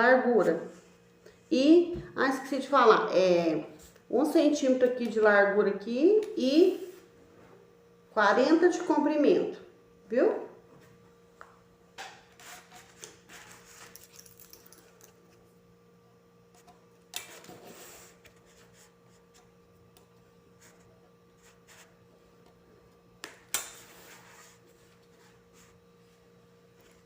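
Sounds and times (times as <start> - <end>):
foam sheets rubbing and scraping: 12.3 - 14.0, 17.3 - 19.3.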